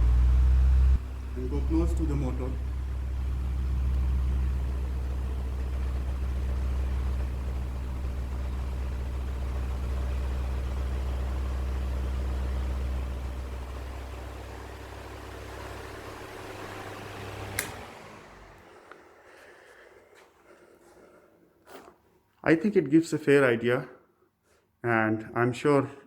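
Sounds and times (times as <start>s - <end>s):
electric fan motor humming: 0.0s - 19.6s.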